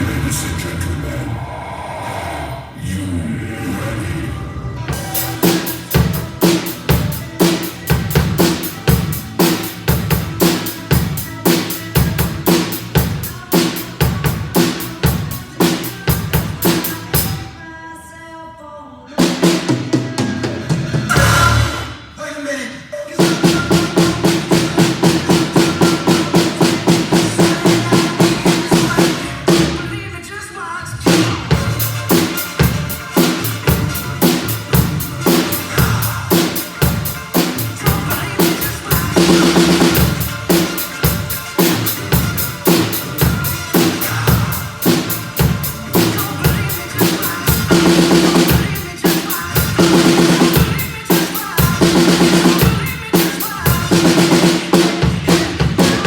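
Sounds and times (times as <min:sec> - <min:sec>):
fast drum kit beat: 0:04.9 - 0:17.5, 0:19.2 - 0:22.0, 0:23.2 - 0:29.9, 0:31.1 - 0:56.0.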